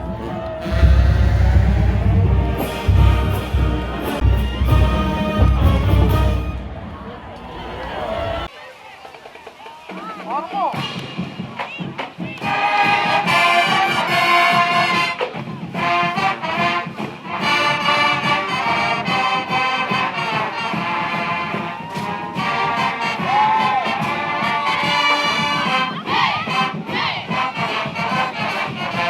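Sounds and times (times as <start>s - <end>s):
marching band brass chords: 0.0s - 8.0s, 9.0s - 29.0s.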